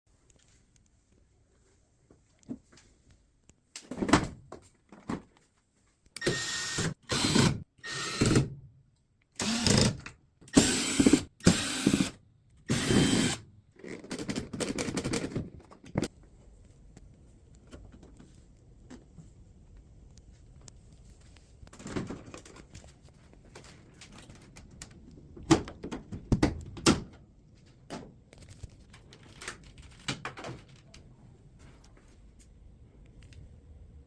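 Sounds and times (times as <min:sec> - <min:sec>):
power drill bursts: 0:06.2 - 0:08.5, 0:09.4 - 0:13.4.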